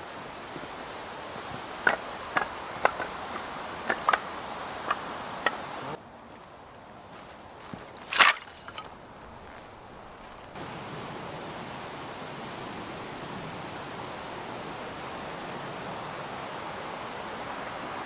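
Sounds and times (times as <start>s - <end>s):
firewood knocking: 1.8s - 5.6s.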